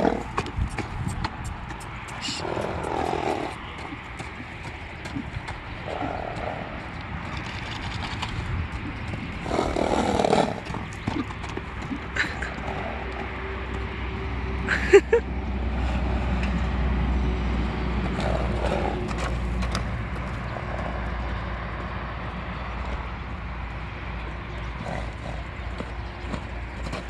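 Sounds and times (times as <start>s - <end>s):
horse snoring: 0.0s - 0.3s, 5.1s - 6.9s, 7.7s - 11.3s, 18.1s - 19.5s.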